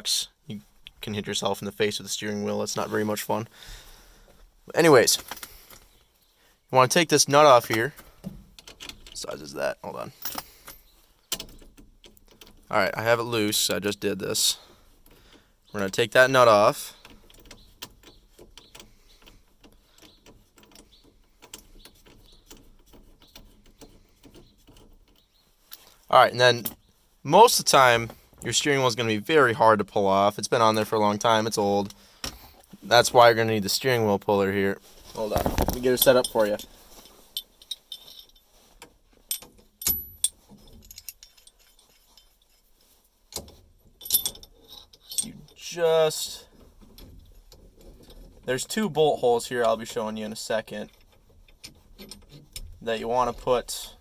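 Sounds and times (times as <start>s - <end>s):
metal tool parts clinking: 5.0s - 5.9s, 7.6s - 9.3s, 10.1s - 10.9s, 35.2s - 38.5s, 39.2s - 42.6s, 43.3s - 45.7s.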